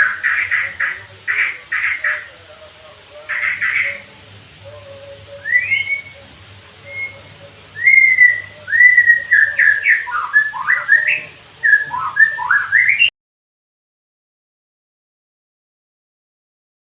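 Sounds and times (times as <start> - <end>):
bird singing whistled phrases: 0.0 - 2.3, 3.2 - 13.1.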